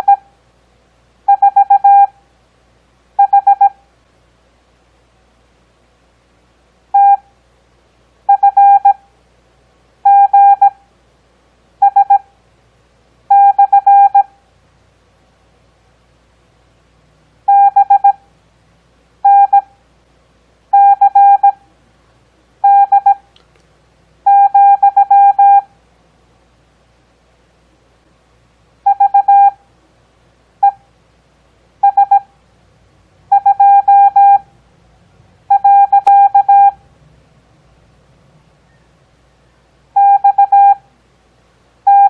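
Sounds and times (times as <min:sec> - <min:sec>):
morse code beeps: 0:01.3 - 0:02.1, 0:03.2 - 0:03.8, 0:07.0 - 0:07.2, 0:08.3 - 0:09.0, 0:10.1 - 0:10.8, 0:11.8 - 0:12.2, 0:13.3 - 0:14.3, 0:17.5 - 0:18.2, 0:19.2 - 0:19.7, 0:20.8 - 0:21.6, 0:22.6 - 0:23.3, 0:24.3 - 0:25.7, 0:28.9 - 0:29.6, 0:31.8 - 0:32.3, 0:33.3 - 0:34.5, 0:35.5 - 0:36.8, 0:40.0 - 0:40.8.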